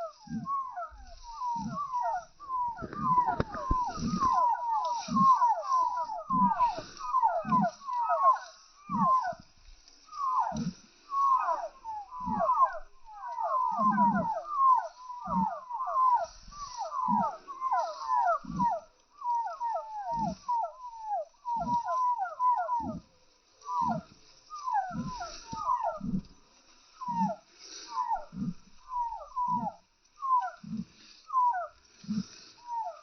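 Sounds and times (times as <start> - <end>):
chicks peeping: 0.0 - 9.2
low clucks: 0.0 - 9.4.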